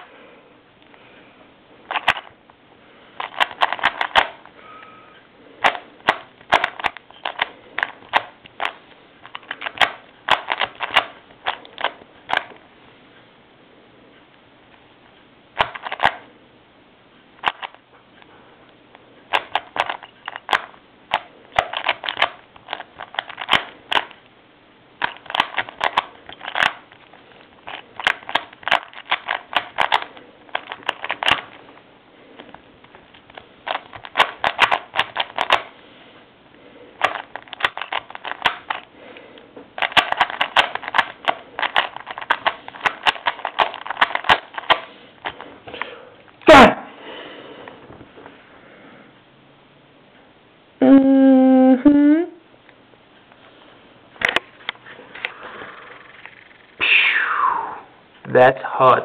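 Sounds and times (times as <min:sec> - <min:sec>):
puzzle cube layers clicking: 0:03.2 - 0:04.5, 0:05.6 - 0:12.5, 0:15.6 - 0:16.3, 0:19.3 - 0:24.2, 0:25.0 - 0:31.6, 0:32.4 - 0:35.7, 0:37.0 - 0:38.9, 0:39.8 - 0:45.4, 0:55.9 - 0:56.8.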